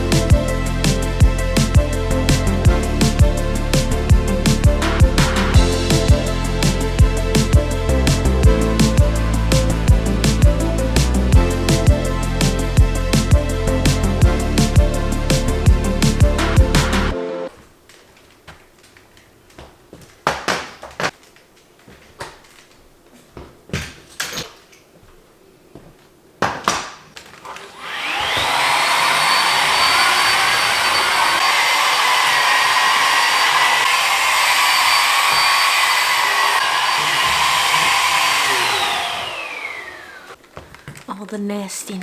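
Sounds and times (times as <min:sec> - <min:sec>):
handling clicks and knocks: 0:17.5 - 0:25.2
hair dryer air rushing: 0:27.6 - 0:40.4
hair dryer motor whine: 0:27.6 - 0:40.4.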